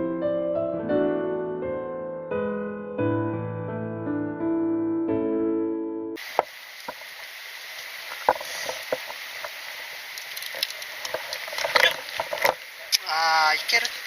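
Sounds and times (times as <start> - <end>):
soft piano music: 0.0 - 6.2
mountain stream rushing: 6.2 - 14.0
sharp clicks and knocks: 7.8 - 12.7.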